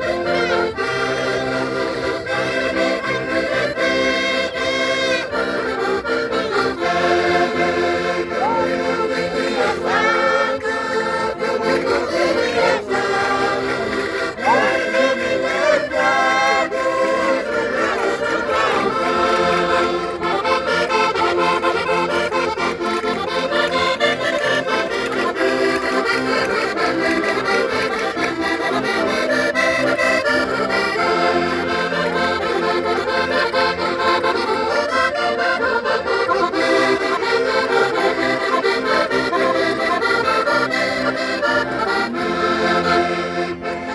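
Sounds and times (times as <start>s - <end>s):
button accordions playing folk tune: 0.0s - 43.9s
person singing: 6.7s - 20.0s.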